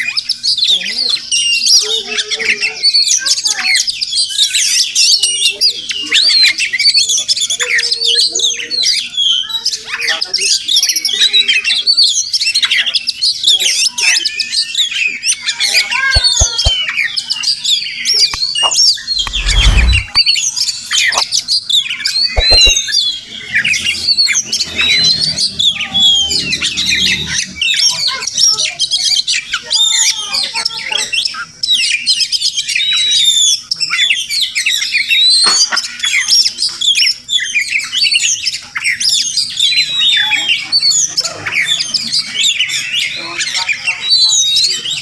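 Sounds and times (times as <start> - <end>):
bird singing: 0.0 - 45.0
low rumble: 19.1 - 20.2.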